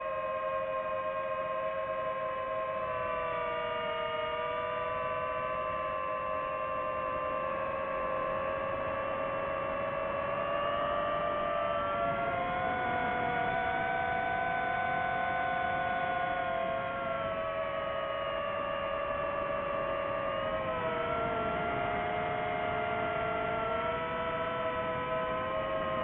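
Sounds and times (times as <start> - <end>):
drone propellers whining: 7.6 - 26.0.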